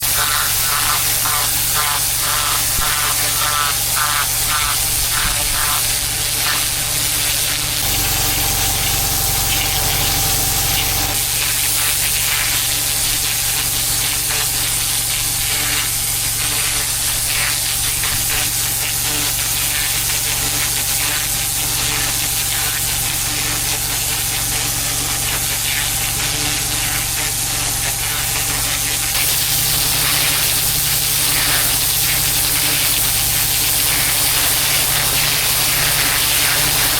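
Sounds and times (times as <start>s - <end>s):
pressure washer motor hum: 0.0s - 13.5s, 29.0s - 36.9s
water jet hissing on paving: 0.0s - 26.7s, 29.0s - 36.9s.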